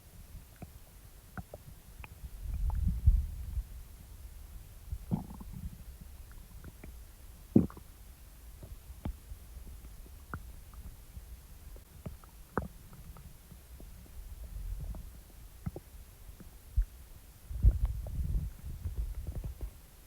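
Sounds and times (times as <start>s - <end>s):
stomach gurgles and pops: 1.4s - 3.6s, 4.9s - 8.0s, 8.6s - 19.8s
stomach growling: 5.0s - 5.9s, 7.5s - 7.9s.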